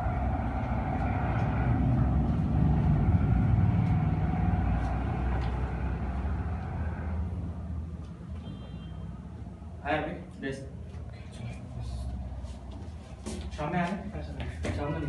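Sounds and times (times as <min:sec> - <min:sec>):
vehicle engine rumbling: 0:00.0 - 0:09.8.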